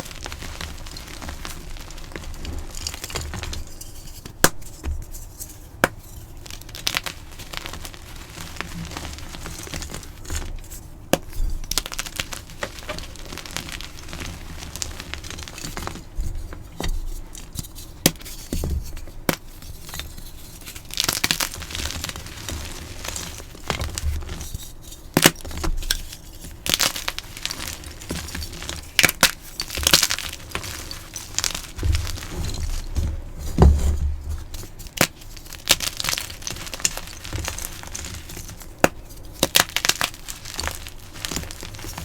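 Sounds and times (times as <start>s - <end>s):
chalk blocks crunching: 0.0s - 18.6s, 19.3s - 42.0s
chalk cracking: 34.5s - 42.0s.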